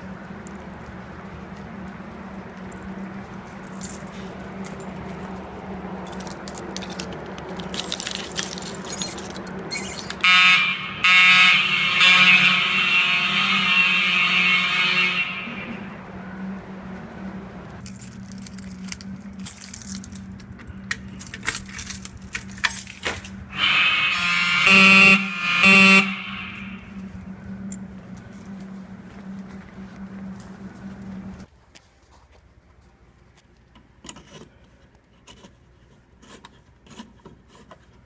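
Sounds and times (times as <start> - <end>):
clicks and rattles: 6.0 - 10.2
fire alarm horn: 10.2 - 16.1, 23.5 - 27.4
steady low hum: 10.6 - 31.7.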